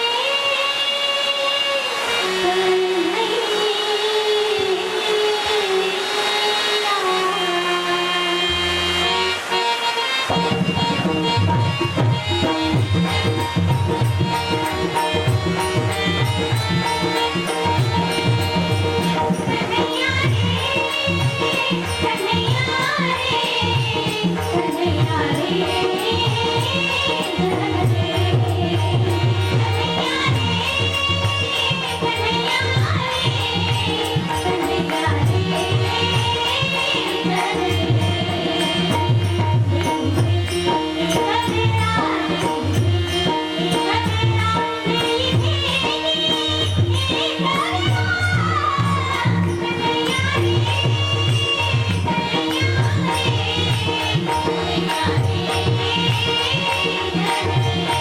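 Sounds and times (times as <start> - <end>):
steady held drone: 0.0 - 58.0
tabla playing: 0.0 - 58.0
girl singing: 17.7 - 39.4, 41.0 - 58.0.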